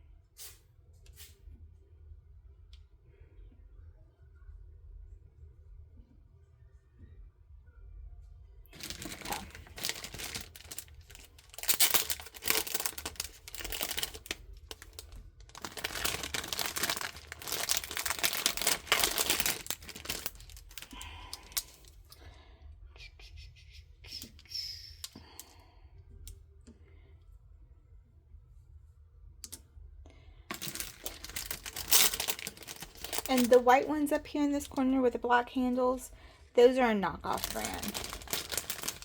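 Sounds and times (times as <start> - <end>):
plastic items clicking set down: 8.8 - 20.9, 30.5 - 33.6
plastic packaging crinkling and tearing: 8.8 - 22.2, 30.5 - 34.8, 37.2 - 39.0.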